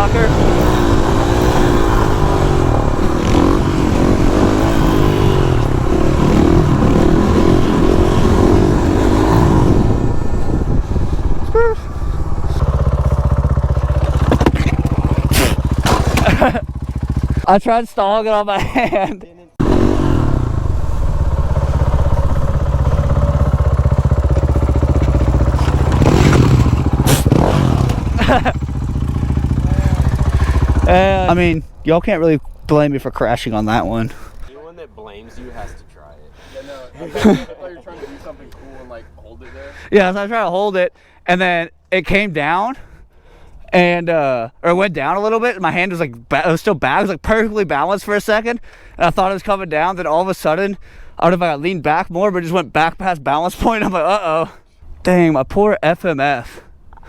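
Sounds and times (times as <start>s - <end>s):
motorcycle engine revving: 0.0s - 17.5s, 19.6s - 31.7s.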